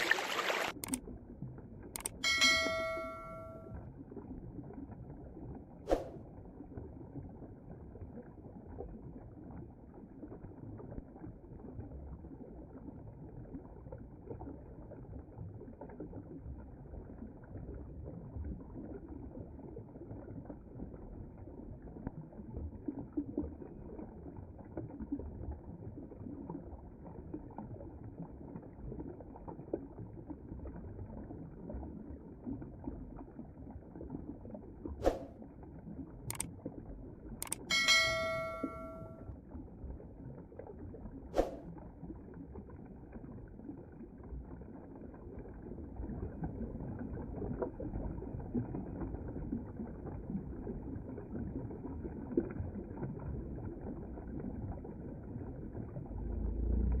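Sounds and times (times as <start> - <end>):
stream running over rocks: 0.0 - 1.0.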